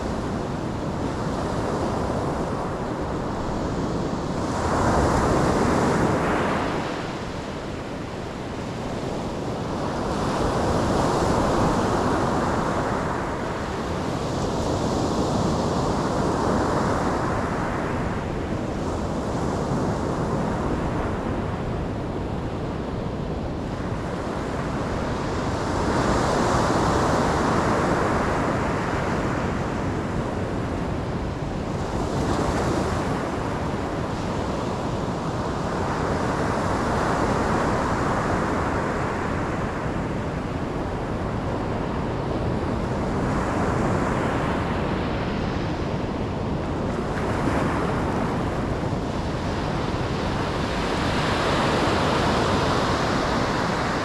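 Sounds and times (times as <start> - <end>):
ocean waves breaking: 22.8 - 54.0.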